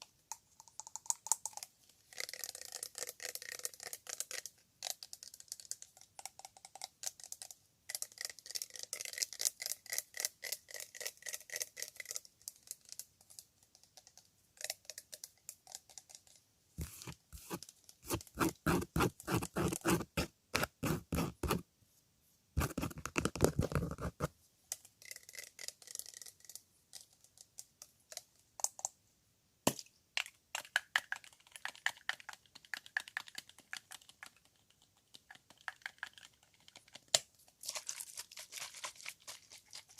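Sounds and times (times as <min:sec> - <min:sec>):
fast tapping and scratching on objects: 0:12.8 - 0:21.6, 0:22.6 - 0:24.3, 0:30.6 - 0:37.2.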